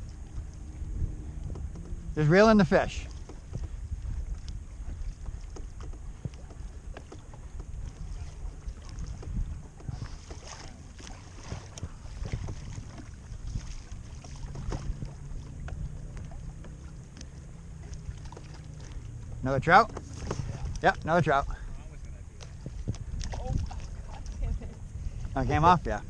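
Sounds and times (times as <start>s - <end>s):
low steady hum: 0.0s - 26.0s
water lapping against kayak hull: 0.0s - 26.0s
wind rumbling on microphone: 0.0s - 26.0s
small knocks: 1.4s - 2.1s, 3.0s - 10.6s, 14.2s - 20.8s.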